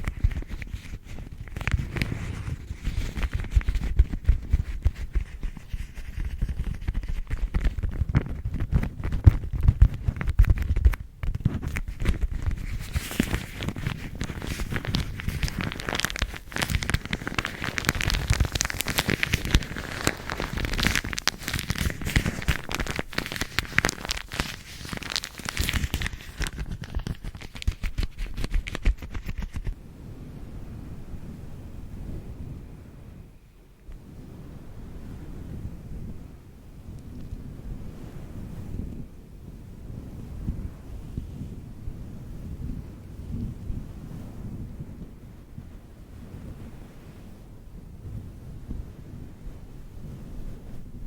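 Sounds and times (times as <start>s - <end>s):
bag crinkling: 0.0s - 29.7s
soft steady hiss: 0.0s - 51.0s.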